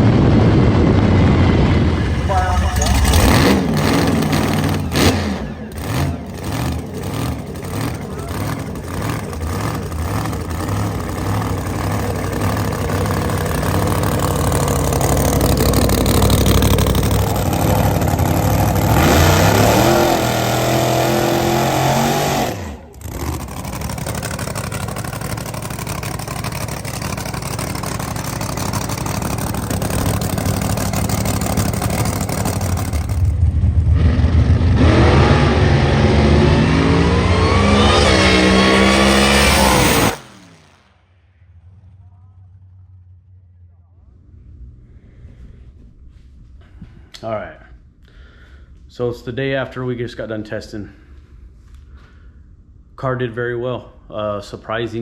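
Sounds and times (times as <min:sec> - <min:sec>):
drag car engine revving: 0:00.0 - 0:43.4.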